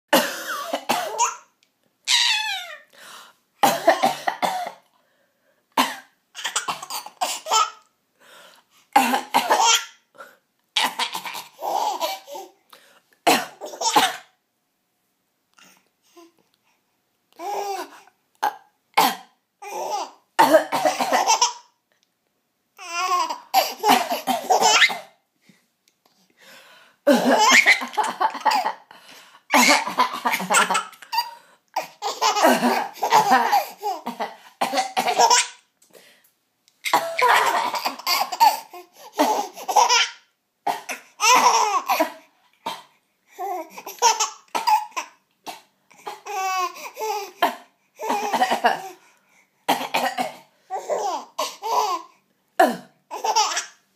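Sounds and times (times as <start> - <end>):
person coughing: 0.1 - 1.3, 3.6 - 4.8, 9.0 - 9.8, 13.3 - 14.3, 20.4 - 21.5, 23.6 - 25.1, 27.1 - 28.8, 32.0 - 35.4, 36.9 - 38.6, 47.4 - 49.0, 49.7 - 50.5, 52.6 - 53.0
baby laughing: 2.1 - 2.8, 6.4 - 7.8, 10.8 - 12.5, 20.9 - 21.7, 22.8 - 25.0, 27.1 - 28.9, 29.5 - 35.6, 36.8 - 40.3, 40.9 - 42.2, 43.4 - 45.2, 50.7 - 52.1, 53.1 - 53.8.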